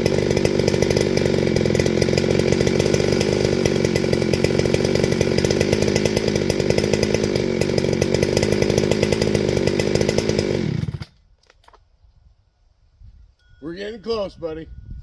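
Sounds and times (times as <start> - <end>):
chainsaw running: 0.0 - 11.3.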